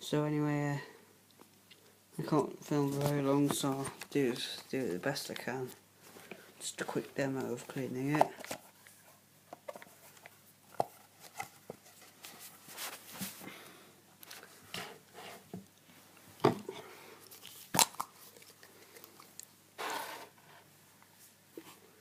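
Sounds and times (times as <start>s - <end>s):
cloth rubbing on screen: 11.9s - 13.5s.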